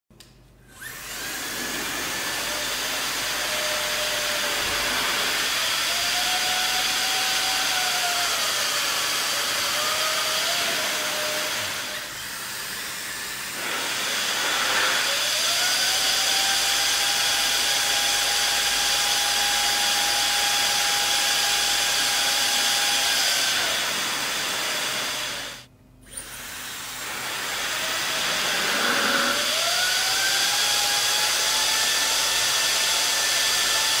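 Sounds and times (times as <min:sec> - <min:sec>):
hair dryers blowing: 0:00.7 - 0:06.2, 0:10.5 - 0:16.4, 0:21.1 - 0:30.6.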